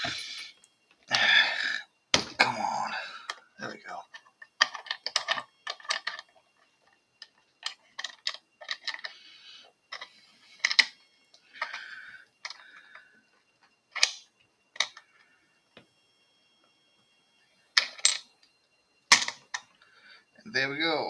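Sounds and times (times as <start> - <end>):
padlock scraping: 4.2 - 6.5, 7.6 - 9.2, 14.0 - 14.2.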